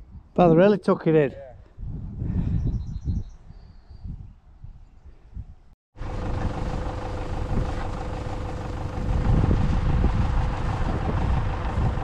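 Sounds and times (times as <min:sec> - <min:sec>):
vehicle engine running: 0:06.0 - 0:12.0.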